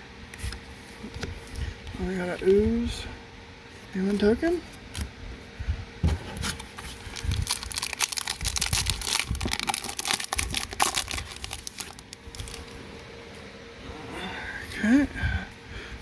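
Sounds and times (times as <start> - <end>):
plastic wrapper crinkling and tearing: 6.6 - 12.8.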